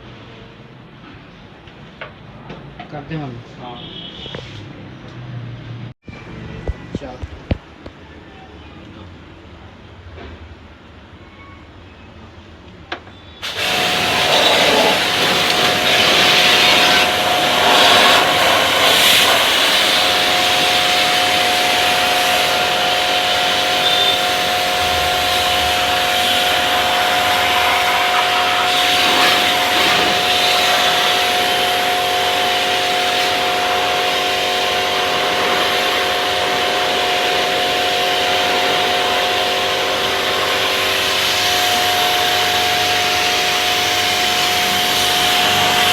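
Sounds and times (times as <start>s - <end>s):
electric machine whining and hissing: 13.4s - 45.9s.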